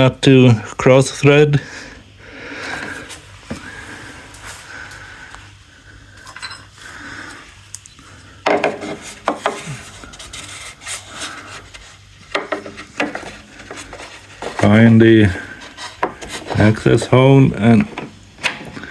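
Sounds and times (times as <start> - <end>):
drain plug rubbing and scraping: 8.6 - 18.1.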